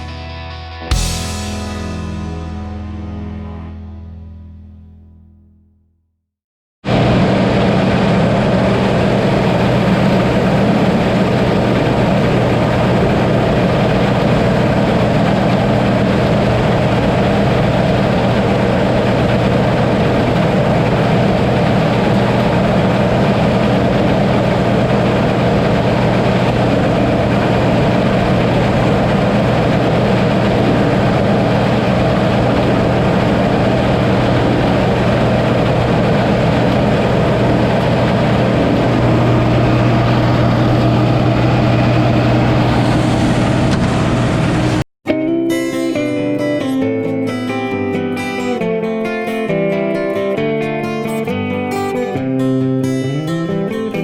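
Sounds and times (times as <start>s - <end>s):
combine harvester engine drone: 6.9s - 44.8s.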